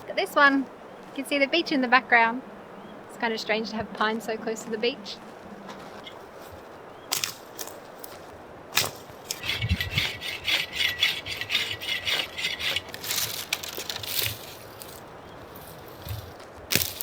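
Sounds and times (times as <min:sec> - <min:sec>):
hand saw cutting wood: 0:08.8 - 0:17.0.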